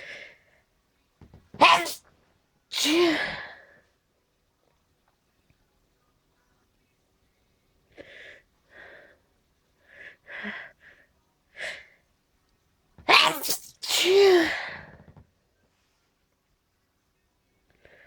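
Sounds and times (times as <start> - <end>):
person sneezing: 1.5 - 2.0, 2.7 - 3.6, 13.1 - 14.9.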